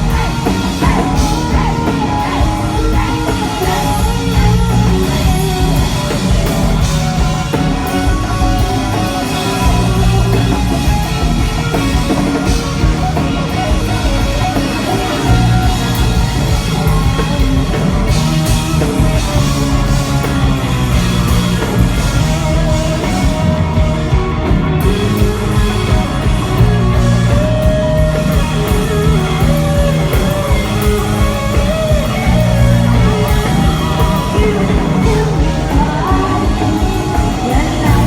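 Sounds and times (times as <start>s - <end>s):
rock band playing live: 0.0s - 38.0s
person singing: 32.9s - 38.0s.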